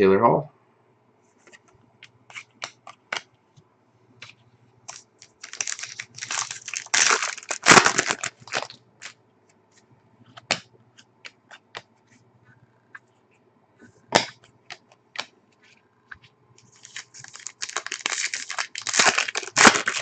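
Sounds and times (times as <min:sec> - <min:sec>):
packaging crinkling and tearing: 0:04.9 - 0:09.1, 0:16.6 - 0:20.0.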